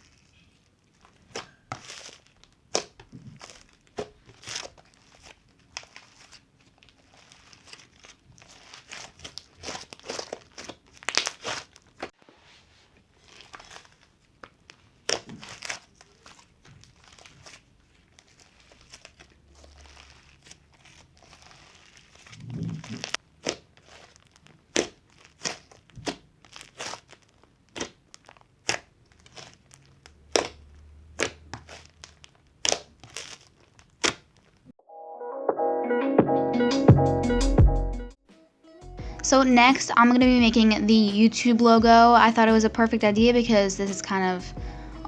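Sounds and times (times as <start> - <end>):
slime crackling and crunching pops: 0.0 - 12.2, 13.2 - 34.7.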